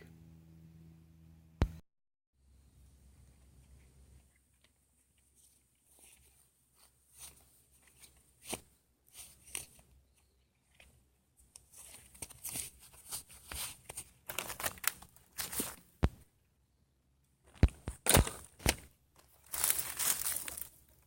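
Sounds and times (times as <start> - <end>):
dry plants rustling and crunching: 13.9 - 15.9, 17.5 - 21.0
plants tearing from soil: 19.4 - 20.8.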